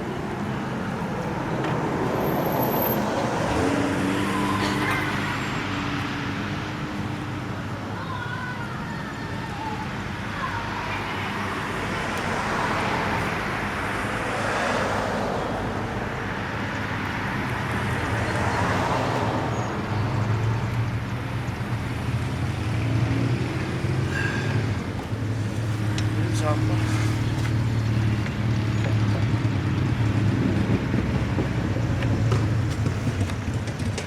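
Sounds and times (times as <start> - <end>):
road traffic passing: 0.0 - 34.0
vehicle engine low rumble: 15.2 - 34.0.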